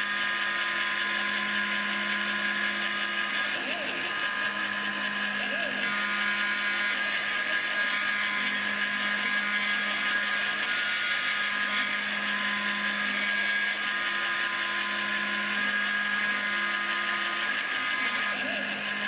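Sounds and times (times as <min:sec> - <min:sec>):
spindle motor whine: 0:00.0 - 0:19.0
stepper motors humming: 0:00.0 - 0:19.0.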